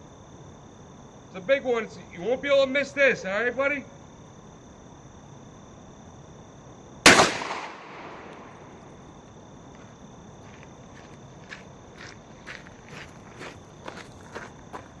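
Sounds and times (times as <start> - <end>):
shotgun shot: 7.0 - 8.7.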